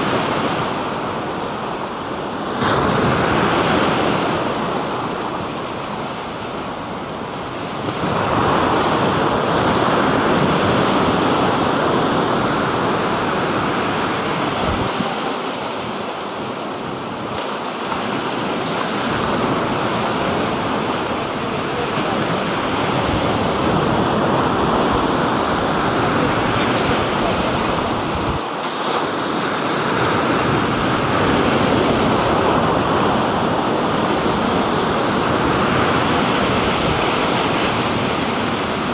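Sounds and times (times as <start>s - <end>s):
waves breaking on shore: 0.0s - 38.9s.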